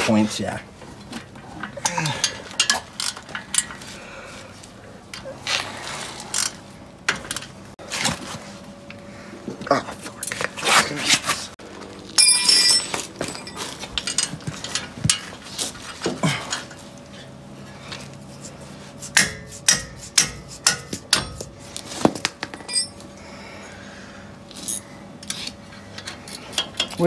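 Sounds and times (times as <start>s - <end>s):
metal hand tools clinking: 12.2s - 15.2s, 22.6s - 23.0s.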